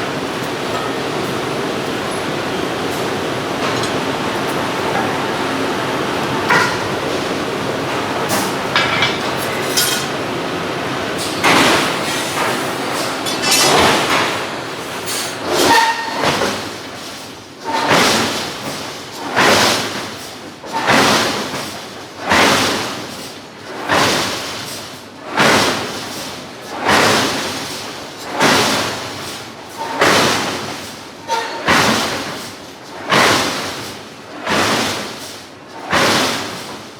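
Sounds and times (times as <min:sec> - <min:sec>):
forge shop din: 0:00.2 - 0:16.2
forging hammer striking steel: 0:03.0 - 0:10.3, 0:11.1 - 0:14.6.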